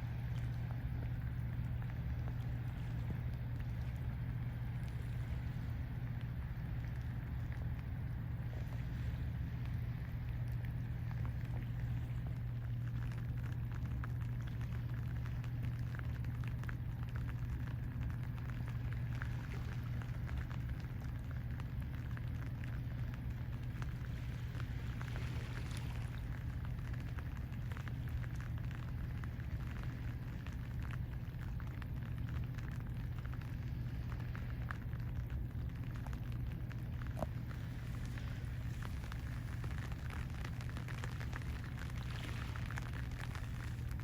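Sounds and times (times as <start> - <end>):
low hum: 0.0 - 44.0.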